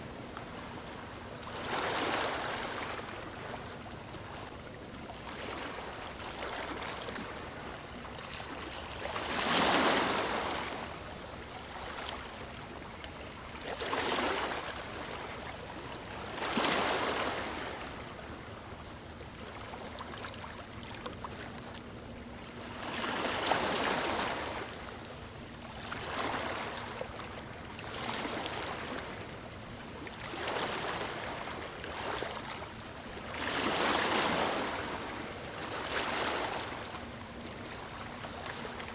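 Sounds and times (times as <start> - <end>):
ocean waves breaking: 0.1 - 3.8.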